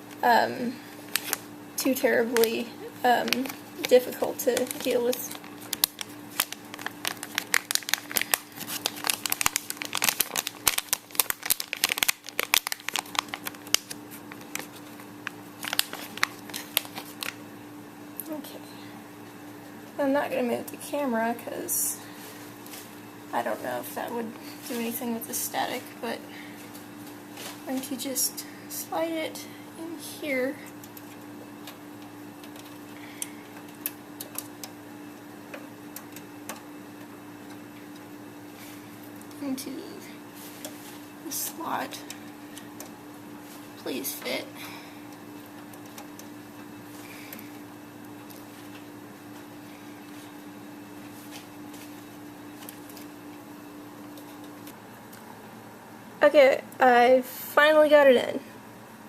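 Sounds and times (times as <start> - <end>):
steady low hum: 0.0 - 59.0
plastic bag crinkling: 0.9 - 1.5, 2.2 - 17.4.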